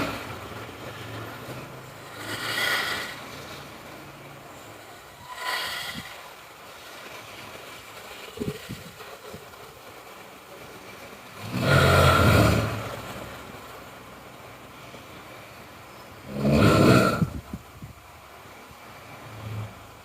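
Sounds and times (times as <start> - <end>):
person snoring: 2.1 - 3.2, 5.2 - 6.2, 16.3 - 17.3.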